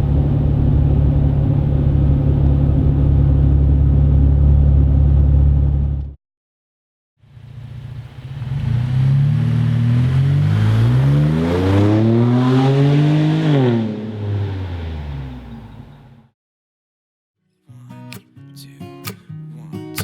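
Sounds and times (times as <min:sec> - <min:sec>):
car engine revving through exhaust: 0:00.0 - 0:06.0, 0:07.4 - 0:16.2.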